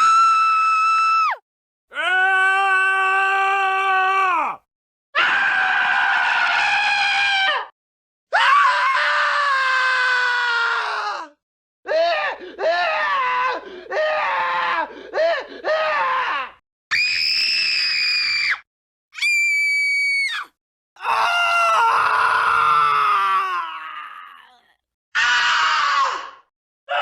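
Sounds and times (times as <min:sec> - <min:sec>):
people screaming: 0:05.2 - 0:07.7, 0:19.2 - 0:24.6.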